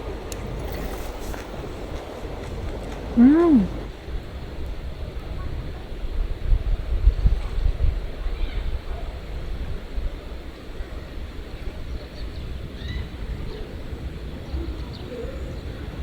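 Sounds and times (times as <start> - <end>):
mountain stream rushing: 0.0 - 3.9
wind buffeting microphone: 0.0 - 16.0.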